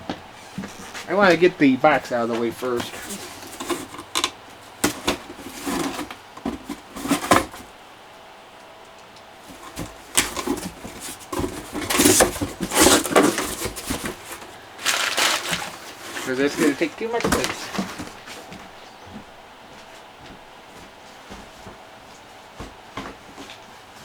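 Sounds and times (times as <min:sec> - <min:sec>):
cardboard scraping and rubbing: 0:00.4 - 0:07.8, 0:09.4 - 0:18.6.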